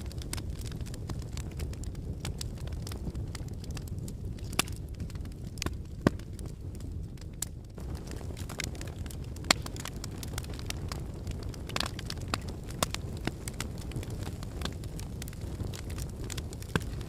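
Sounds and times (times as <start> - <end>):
fire crackling and popping: 0.0 - 17.0.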